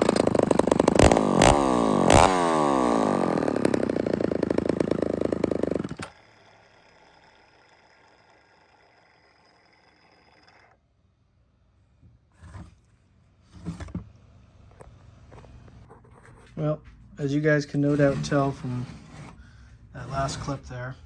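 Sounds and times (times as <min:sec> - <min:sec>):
chainsaw running at high revs: 0:00.0 - 0:10.6.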